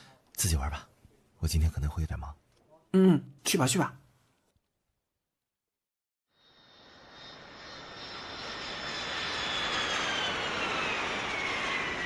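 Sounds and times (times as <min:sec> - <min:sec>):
jet airliner passing overhead: 0:06.4 - 0:12.0.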